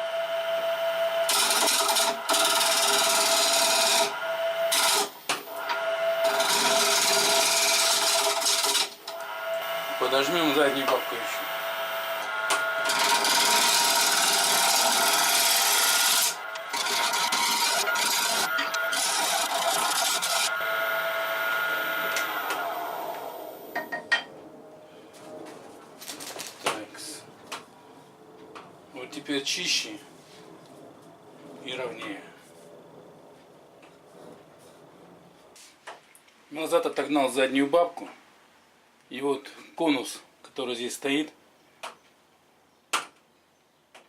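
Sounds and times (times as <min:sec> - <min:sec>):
wood lathe whining: 0:00.0 - 0:23.8
turning tool rasping on wood: 0:01.3 - 0:04.1, 0:06.3 - 0:08.8, 0:12.9 - 0:20.5.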